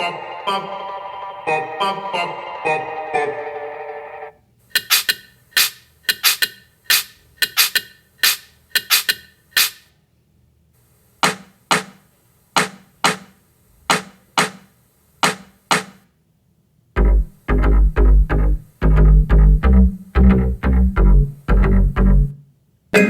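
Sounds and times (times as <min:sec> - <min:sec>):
short sharp pops in a beat: 0:17.0 - 0:22.4.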